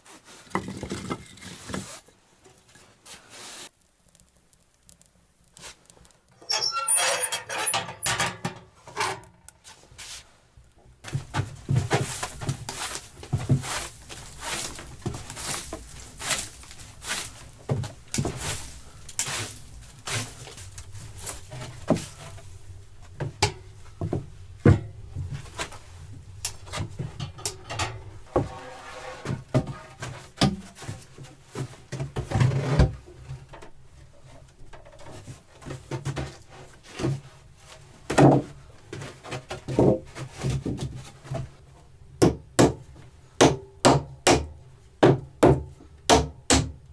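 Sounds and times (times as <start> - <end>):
wooden knocks and clatter: 0.5 - 1.9, 11.0 - 37.3.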